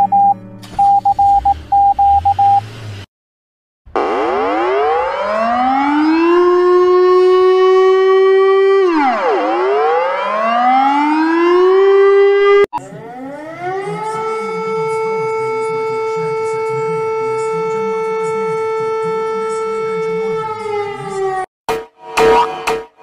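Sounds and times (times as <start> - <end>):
civil defence siren: 4.0 - 21.5.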